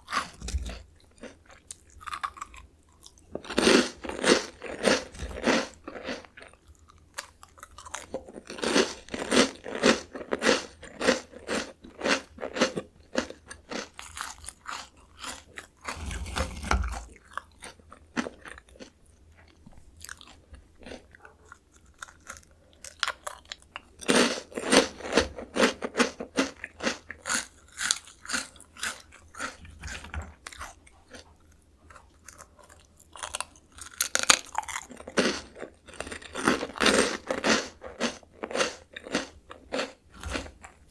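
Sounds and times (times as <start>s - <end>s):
crackers crunching: 0.0s - 40.9s.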